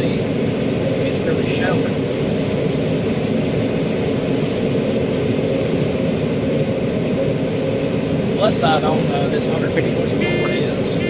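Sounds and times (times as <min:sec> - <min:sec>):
combine harvester droning: 0:09.0 - 0:11.0.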